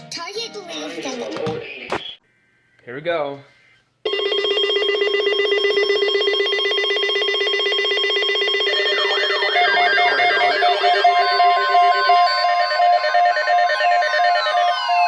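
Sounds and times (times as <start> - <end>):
buzzing emergency alert tone: 4.0 - 15.0
warbling sweeping tones: 8.3 - 15.0.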